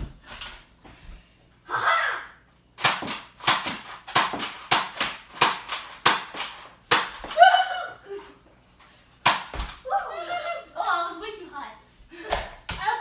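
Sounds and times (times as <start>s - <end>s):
toy blaster firing foam darts: 2.8s - 7.4s, 9.2s - 9.8s.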